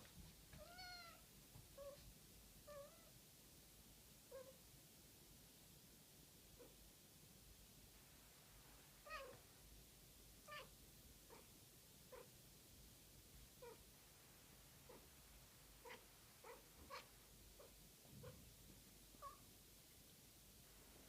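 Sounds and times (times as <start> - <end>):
cat meowing in chirpy calls: 0.6 - 1.2, 9.0 - 9.4.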